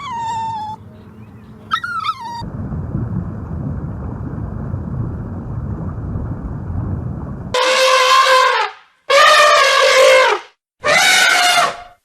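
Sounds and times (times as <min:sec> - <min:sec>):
rough low noise: 0:02.4 - 0:07.6.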